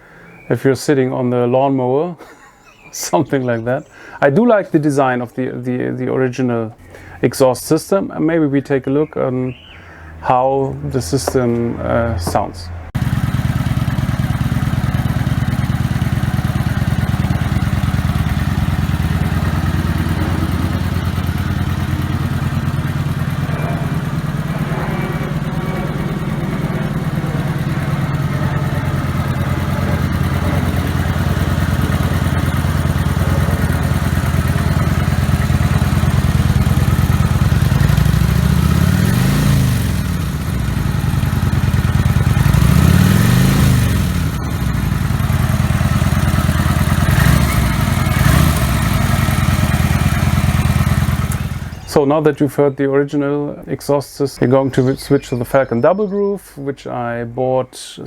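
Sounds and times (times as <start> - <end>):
motorcycle engine idling: 9.5 - 9.8, 11.0 - 52.0.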